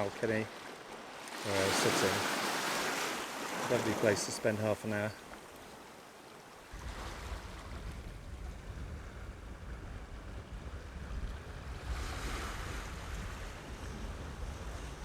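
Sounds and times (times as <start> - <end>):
sea washing against shore: 0.0 - 15.0
wind buffeting microphone: 6.7 - 15.0.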